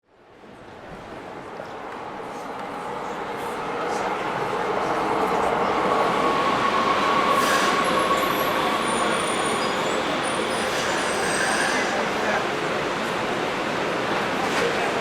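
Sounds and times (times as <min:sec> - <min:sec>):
subway train rumble: 0:00.1 - 0:15.0
high wheel squeals: 0:06.9 - 0:12.0.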